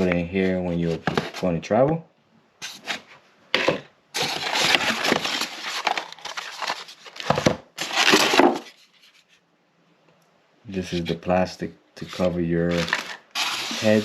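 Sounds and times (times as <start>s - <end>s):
plastic packaging crinkling: 4.2s - 9.3s, 12.0s - 14.0s.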